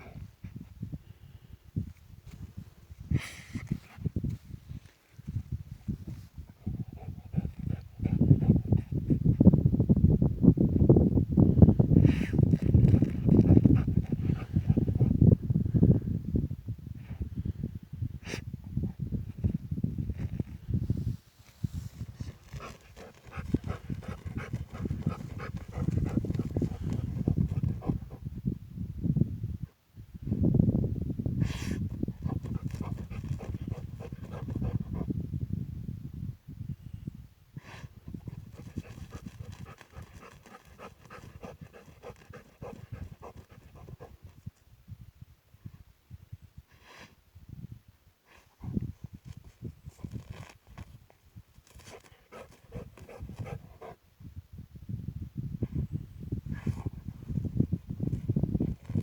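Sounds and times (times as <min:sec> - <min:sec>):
dog panting: 0:06.6 - 0:08.8, 0:12.6 - 0:15.1, 0:22.2 - 0:28.2, 0:32.2 - 0:35.1, 0:38.4 - 0:44.2, 0:51.9 - 0:54.0.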